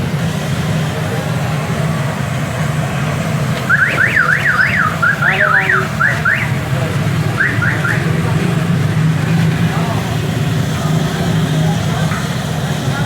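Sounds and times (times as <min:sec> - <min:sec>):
electronic alarm rising sweeps: 0:03.7 - 0:06.6, 0:07.4 - 0:08.3.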